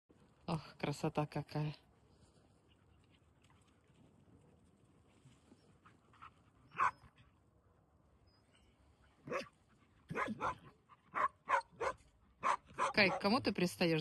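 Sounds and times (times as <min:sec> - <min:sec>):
dog barking: 0:06.8 - 0:07.0, 0:09.2 - 0:09.5, 0:10.1 - 0:13.4.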